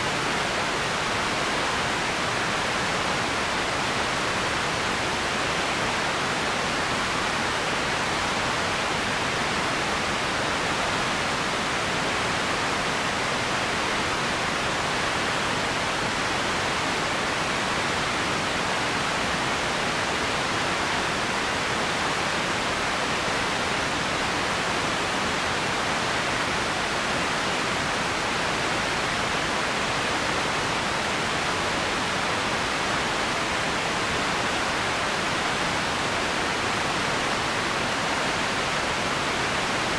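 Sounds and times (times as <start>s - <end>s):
steady ambience hiss: 0.0s - 39.9s.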